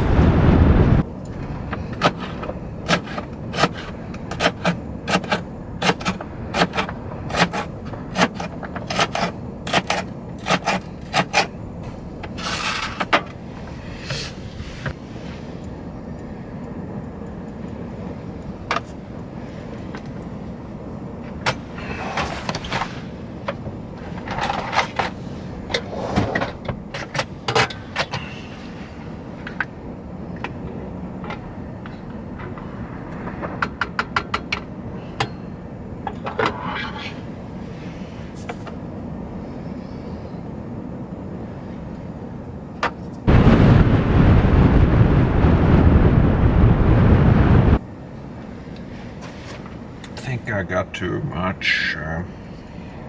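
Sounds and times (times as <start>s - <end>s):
wind rushing on microphone: 0.0s - 4.3s, 43.3s - 47.8s
low wind rumble: 0.0s - 27.0s, 28.2s - 37.7s, 38.8s - 50.0s.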